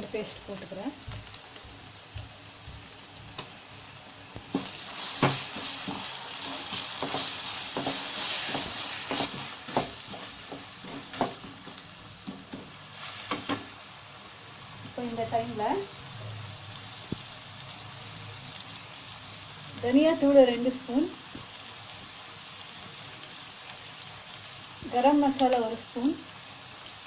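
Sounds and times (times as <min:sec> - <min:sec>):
onions sizzling in hot oil: 0:00.0 - 0:27.0
spoon knocking against pan: 0:06.7 - 0:12.7.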